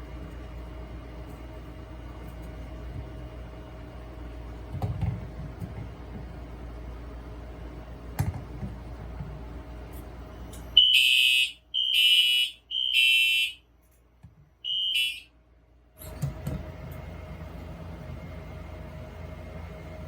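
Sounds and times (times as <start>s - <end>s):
fire alarm horn blasts: 10.8s - 13.6s, 14.6s - 15.4s.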